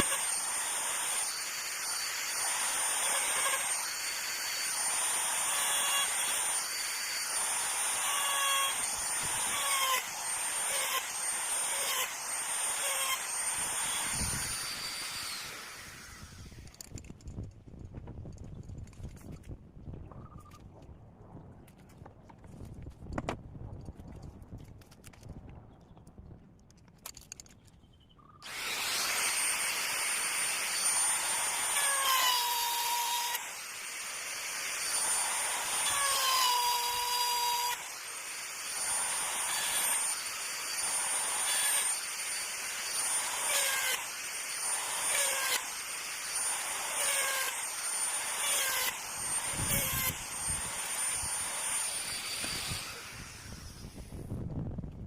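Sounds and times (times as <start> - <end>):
power tool motor whine on wood: 0.0 - 16.9, 28.4 - 54.2.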